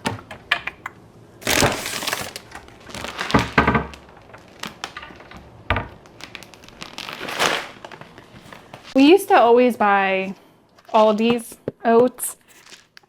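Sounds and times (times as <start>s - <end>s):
food packaging crinkling: 1.4s - 9.0s, 12.4s - 13.0s.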